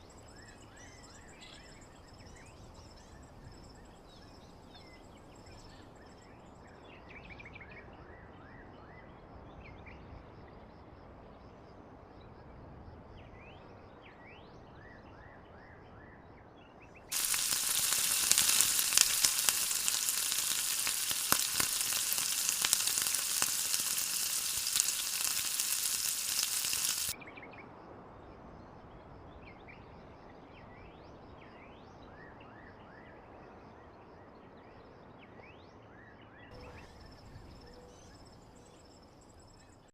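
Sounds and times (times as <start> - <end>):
faint chirps: 17.1 - 27.2
food frying in hot oil: 17.1 - 27.2.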